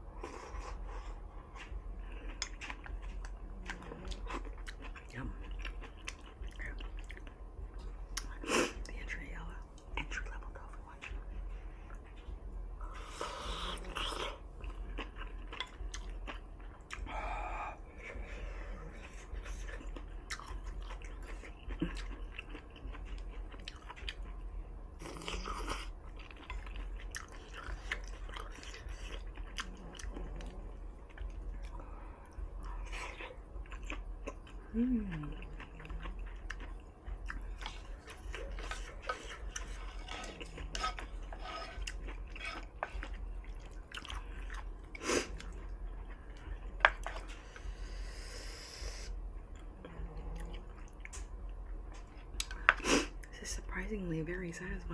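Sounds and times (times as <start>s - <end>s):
person chewing food: 0.0s - 53.3s
person humming mm: 34.7s - 35.5s.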